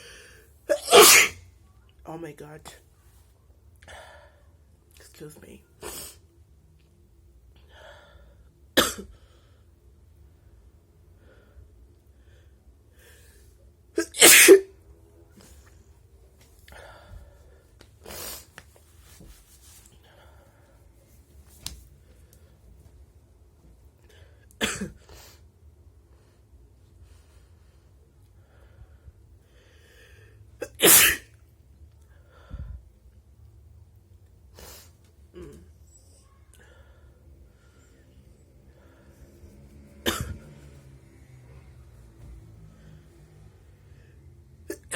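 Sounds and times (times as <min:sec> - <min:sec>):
person sneezing: 0:00.7 - 0:01.4, 0:14.0 - 0:14.7, 0:30.6 - 0:31.3
soft breaths: 0:15.2 - 0:30.6, 0:32.0 - 0:33.3, 0:34.4 - 0:44.6.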